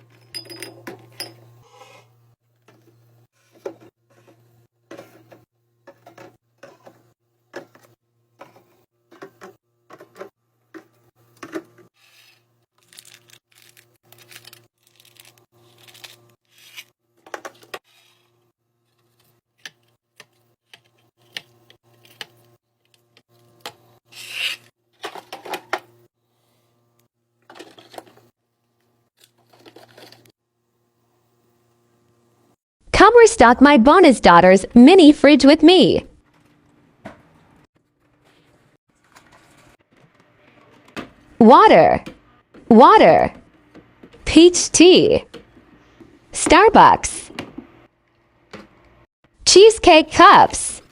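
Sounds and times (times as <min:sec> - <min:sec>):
packaging rustling: 0:12.8 - 0:16.8.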